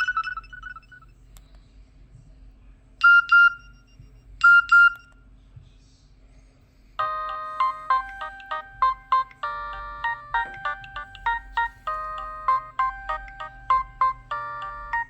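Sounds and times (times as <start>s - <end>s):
mobile phone ringtone: 0.0s - 1.0s, 7.0s - 15.0s.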